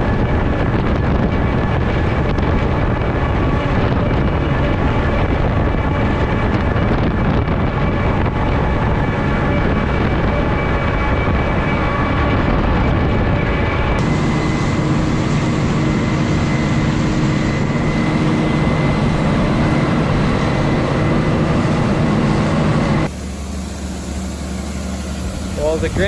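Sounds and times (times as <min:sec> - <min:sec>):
heavy farm machinery running: 0:00.0 - 0:26.0
engine idling: 0:14.0 - 0:26.0.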